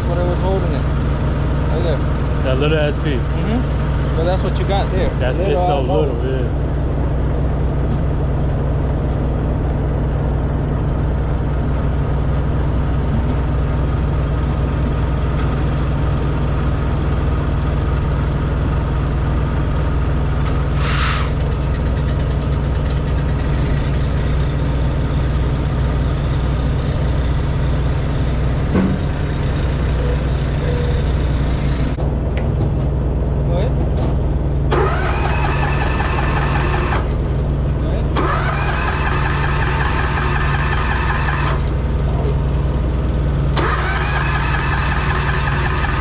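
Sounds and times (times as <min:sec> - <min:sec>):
diesel engine idling: 0:00.0 - 0:46.0
air release hiss: 0:20.7 - 0:21.5.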